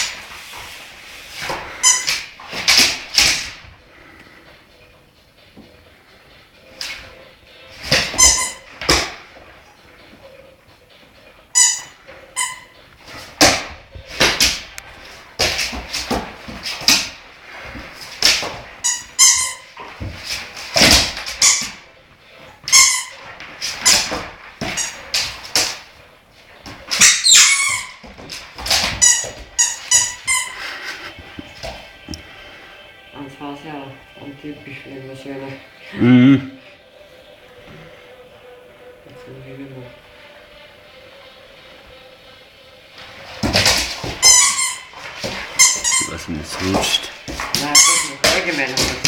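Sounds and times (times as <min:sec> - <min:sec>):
high-pitched squeaks: 0:01.4 - 0:03.0, 0:07.9 - 0:09.2, 0:11.5 - 0:12.9, 0:18.4 - 0:21.9, 0:22.6 - 0:25.3, 0:26.9 - 0:32.1, 0:43.6 - 0:49.0
short high-pitched squeaks: 0:01.7 - 0:02.3, 0:08.2 - 0:08.7, 0:11.5 - 0:12.8, 0:18.8 - 0:19.8, 0:27.0 - 0:28.0, 0:28.8 - 0:30.8, 0:44.2 - 0:47.1.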